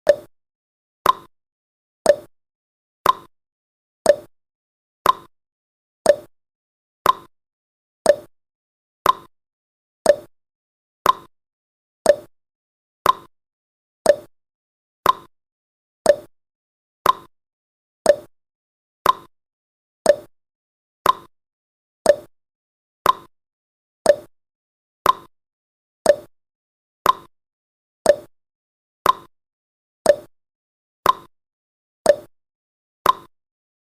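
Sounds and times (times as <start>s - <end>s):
timer ticking: 0.0s - 0.3s, 1.0s - 1.3s, 2.1s - 2.3s, 3.0s - 3.3s, 4.0s - 4.3s, 5.0s - 5.3s, 6.0s - 6.3s, 7.0s - 7.3s, 8.1s - 8.3s, 9.0s - 9.3s, 10.0s - 10.3s, 11.0s - 11.3s, 12.0s - 12.3s, 13.0s - 13.3s, 14.0s - 14.3s, 15.0s - 15.3s, 16.0s - 16.3s, 17.0s - 17.3s, 18.1s - 18.3s, 19.0s - 19.3s, 20.1s - 20.3s, 21.0s - 21.3s, 22.1s - 22.3s, 23.0s - 23.3s, 24.1s - 24.3s, 25.0s - 25.3s, 26.0s - 26.3s, 27.0s - 27.3s, 28.1s - 28.3s, 29.0s - 29.3s, 30.1s - 30.3s, 31.0s - 31.3s, 32.1s - 32.3s, 33.0s - 33.3s.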